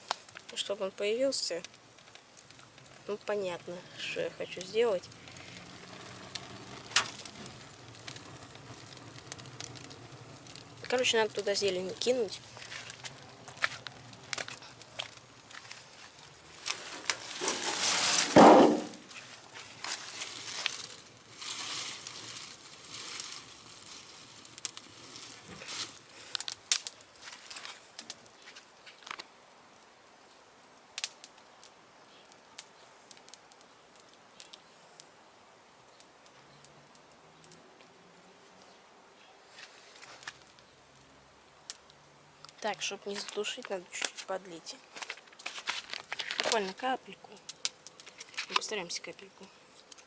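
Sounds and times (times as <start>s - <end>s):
leafy plants rustling: 0.0s - 29.3s, 42.4s - 50.0s
fire crackling: 0.0s - 50.0s
loud rush of fire: 4.7s - 27.0s.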